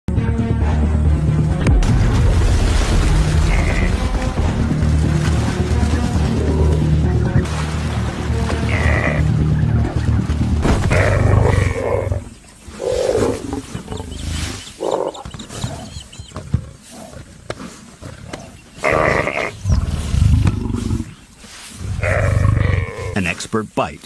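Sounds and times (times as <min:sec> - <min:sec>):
lioness growling and roaring: 0:03.3 - 0:04.1, 0:06.0 - 0:07.4, 0:08.6 - 0:10.1, 0:10.8 - 0:23.2.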